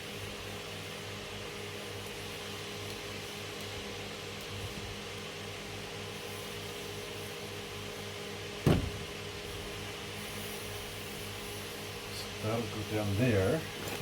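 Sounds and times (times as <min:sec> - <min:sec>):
sharp knock: 0:08.7 - 0:09.0.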